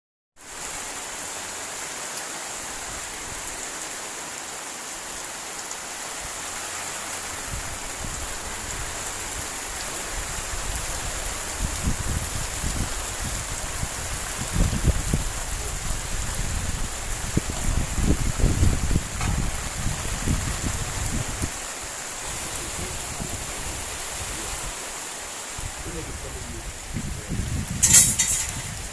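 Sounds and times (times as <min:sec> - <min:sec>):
steady rain: 0:00.4 - 0:28.9
low rumbles: 0:07.0 - 0:24.9.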